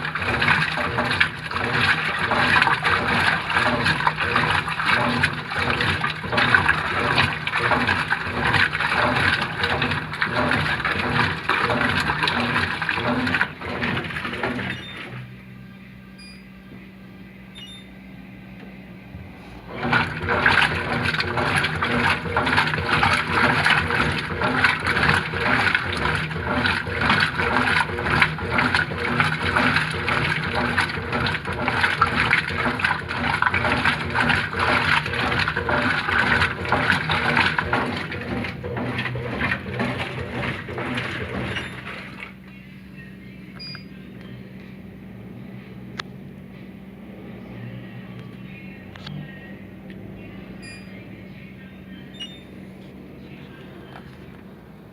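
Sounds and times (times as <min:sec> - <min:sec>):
washing machine churning water: 0:00.0 - 0:15.6, 0:17.5 - 0:44.0, 0:48.7 - 0:54.9
steady low hum: 0:00.0 - 0:54.9.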